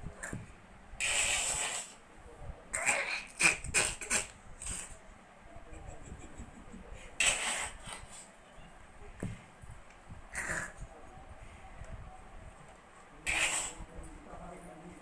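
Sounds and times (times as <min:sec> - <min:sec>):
small pet sneezing: 0:07.2 - 0:08.3, 0:13.2 - 0:13.9.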